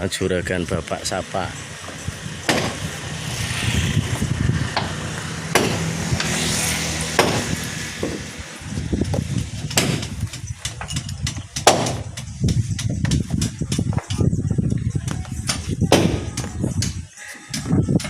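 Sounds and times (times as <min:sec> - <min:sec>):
low rumble: 0:01.5 - 0:11.4
hammer knocking on wood: 0:07.2 - 0:08.3.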